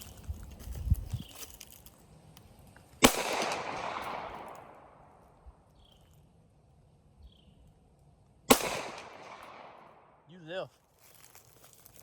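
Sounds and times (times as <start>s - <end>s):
pistol shot with echo: 3.0s - 5.1s, 8.5s - 10.2s.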